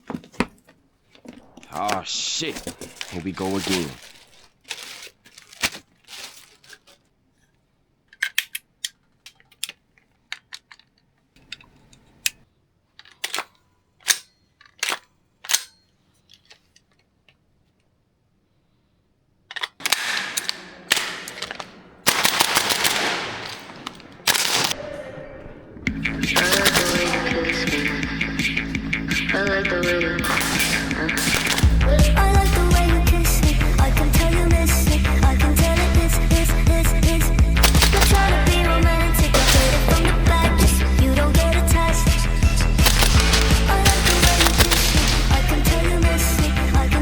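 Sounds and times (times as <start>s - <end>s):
airsoft rapid fire: 19.8s - 25.1s, 25.9s - 46.7s
airsoft rifle shots: 19.8s - 46.7s
music: 25.9s - 47.0s.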